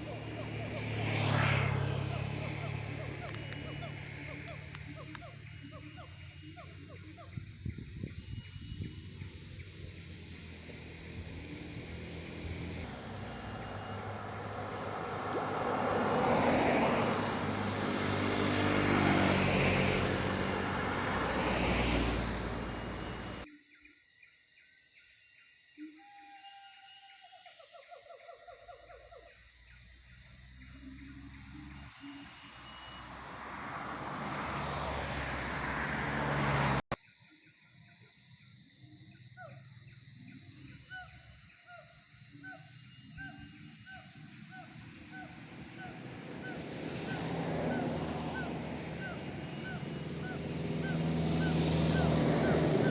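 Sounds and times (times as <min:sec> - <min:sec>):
road vehicles passing: 0:00.0 - 0:23.4, 0:30.2 - 0:37.0, 0:43.0 - 0:52.9
bird calling: 0:19.4 - 0:23.4, 0:42.4 - 0:52.9.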